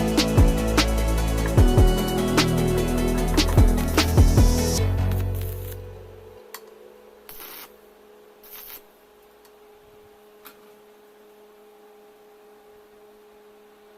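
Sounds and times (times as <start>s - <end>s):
background music: 0.0s - 7.6s
faint steady hum: 0.0s - 13.9s.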